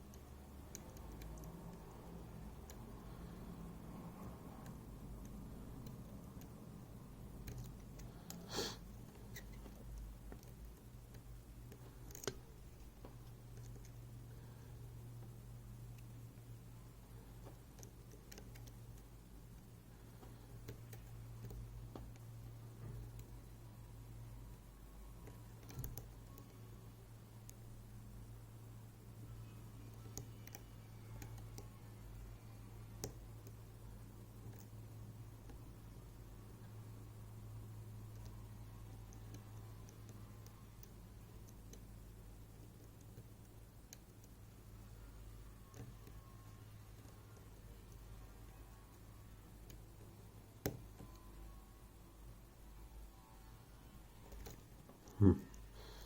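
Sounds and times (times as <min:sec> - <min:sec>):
low steady hum: 0:00.0 - 0:56.0
short breath of air: 0:08.4 - 0:08.8.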